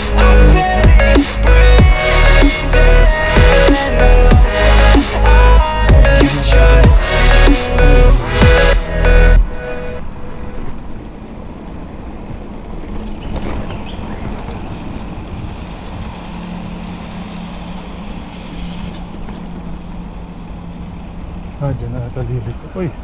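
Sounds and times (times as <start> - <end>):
bicycle rolling noise: 9.5 - 23.0.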